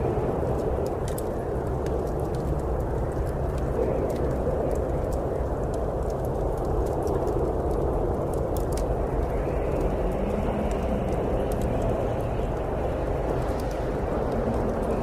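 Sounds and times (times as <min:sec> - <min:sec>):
snowstorm wind: 0:00.0 - 0:15.0
wood fire crackling: 0:00.0 - 0:15.0.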